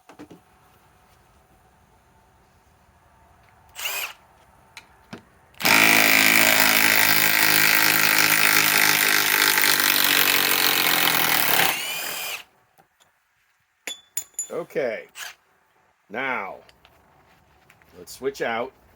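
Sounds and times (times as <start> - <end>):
impact wrench hammering: 5.6 - 11.7.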